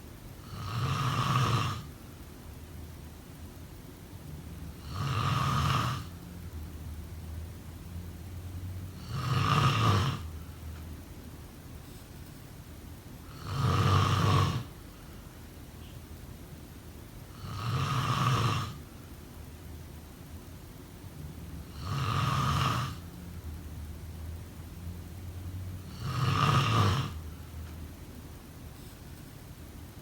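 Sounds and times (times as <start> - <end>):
person snoring: 0.4 - 1.9, 4.7 - 6.2, 8.9 - 10.4, 13.3 - 14.8, 17.3 - 18.8, 21.6 - 23.1, 25.8 - 27.3.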